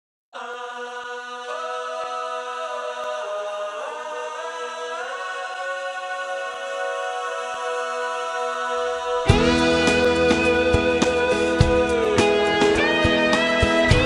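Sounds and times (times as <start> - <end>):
sustained chords: 9.2 - 14.0.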